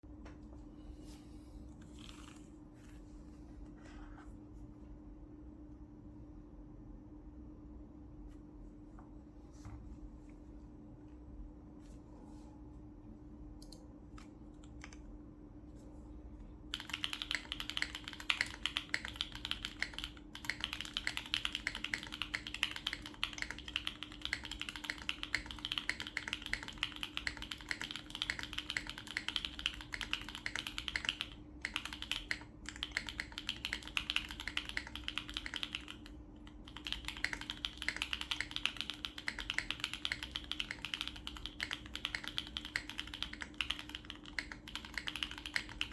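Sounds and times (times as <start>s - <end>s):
mechanical keyboard typing: 16.7s - 45.9s.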